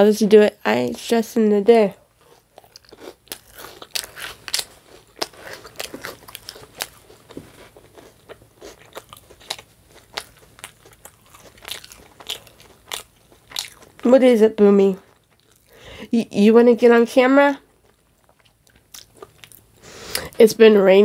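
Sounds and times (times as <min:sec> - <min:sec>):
person chewing food: 0:02.1 - 0:14.1, 0:15.0 - 0:15.8, 0:17.7 - 0:20.4.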